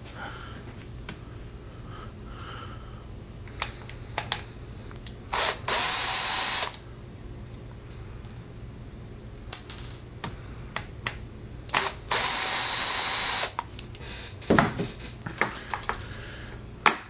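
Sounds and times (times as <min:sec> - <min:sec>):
cordless drill running: 0:05.3 - 0:06.8, 0:11.7 - 0:13.6.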